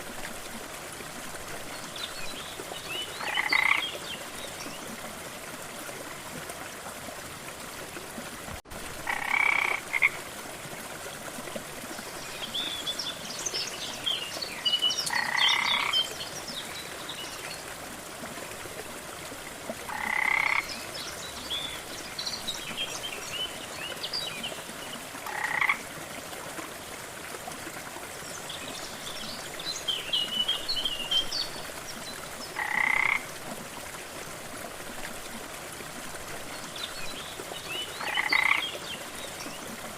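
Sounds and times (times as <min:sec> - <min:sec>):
frog croaking: 0:03.2 - 0:03.8, 0:09.0 - 0:10.2, 0:15.1 - 0:16.0, 0:19.9 - 0:20.7, 0:25.2 - 0:25.8, 0:32.6 - 0:33.2, 0:38.0 - 0:38.6.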